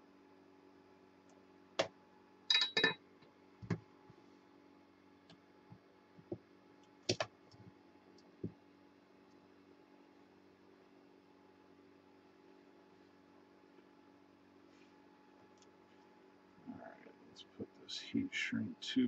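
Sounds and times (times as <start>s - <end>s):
steady low hum: 0.0s - 19.0s
small parts and tools clinking: 2.5s - 3.0s.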